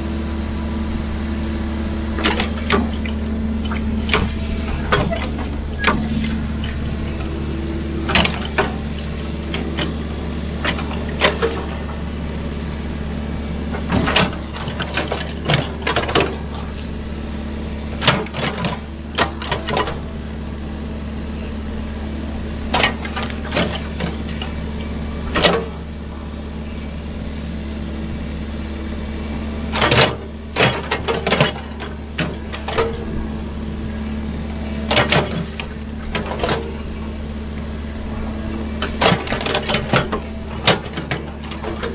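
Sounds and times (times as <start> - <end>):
excavator diesel engine running: 0.0 - 41.9
sharp clanks and knocks: 2.2 - 7.3, 8.0 - 10.0, 10.6 - 12.0, 13.7 - 16.9, 18.0 - 20.0, 22.7 - 25.8, 29.7 - 33.2, 34.7 - 36.9, 38.8 - 41.9.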